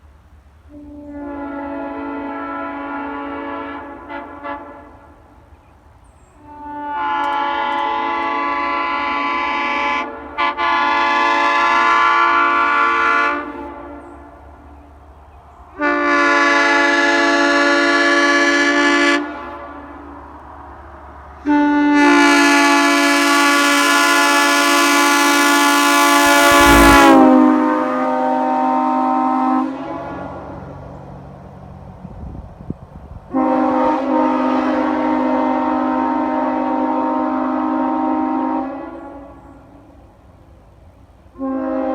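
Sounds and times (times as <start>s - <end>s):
chime train horn blasts: 24.5s - 27.3s.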